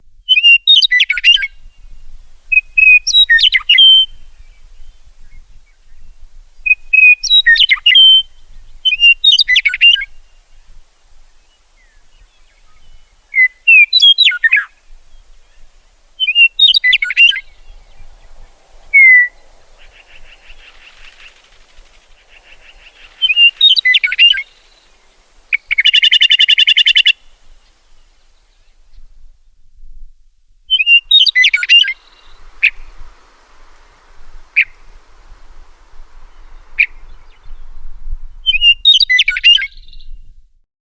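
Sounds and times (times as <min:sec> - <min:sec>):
meadowlark singing: 0:00.3 - 0:29.1, 0:30.7 - 0:40.3
buzzy rattling bird call: 0:12.0 - 0:28.2, 0:31.0 - 0:37.9
soft rapid bird chatter: 0:15.6 - 0:28.4.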